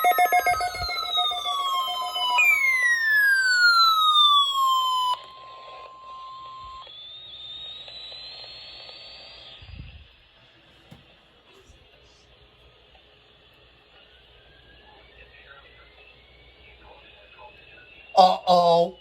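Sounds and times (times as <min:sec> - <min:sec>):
weather radio alarm tone: 0:00.0 - 0:07.7, 0:18.1 - 0:19.0
falling siren-like tone: 0:00.0 - 0:09.8.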